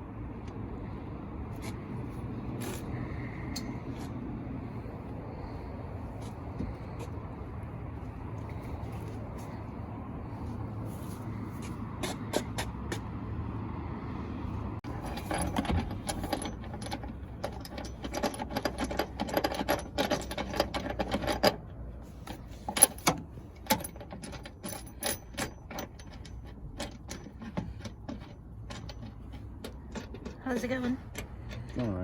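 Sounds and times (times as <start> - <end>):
metallic clicks and knocks: 14.8 - 32.0.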